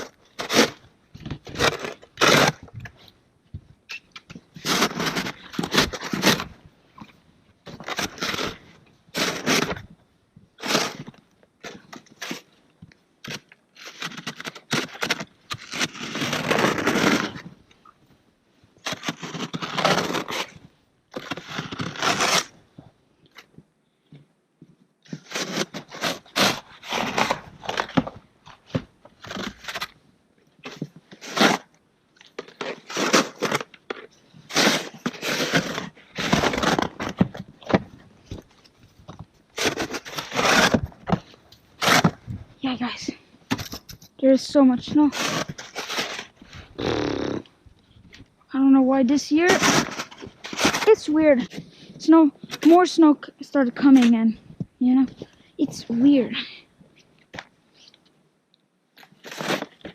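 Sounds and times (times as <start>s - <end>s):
shovel scraping snow: 0.0s - 0.8s, 1.4s - 2.6s, 4.6s - 6.5s, 7.7s - 9.8s, 10.6s - 12.5s, 13.3s - 17.5s, 18.8s - 22.6s, 25.1s - 28.0s, 30.6s - 31.7s, 32.4s - 33.7s, 34.4s - 37.8s, 39.5s - 41.2s, 41.8s - 43.1s, 44.3s - 47.4s, 49.1s - 53.2s, 59.0s - 59.9s.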